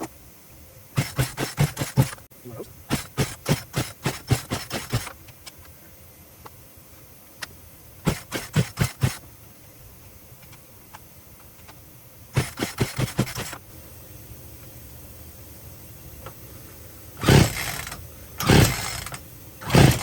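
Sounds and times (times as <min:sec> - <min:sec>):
chainsaw pull-start cranking: 0:01.0 - 0:02.2, 0:02.9 - 0:05.1, 0:08.1 - 0:09.2, 0:12.4 - 0:13.6, 0:17.2 - 0:20.0.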